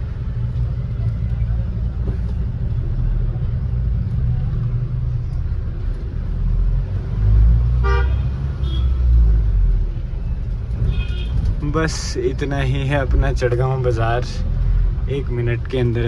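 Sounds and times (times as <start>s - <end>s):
car rumbling in traffic: 0.0s - 16.0s
vehicle horn toot: 7.8s - 9.0s, 10.9s - 11.4s.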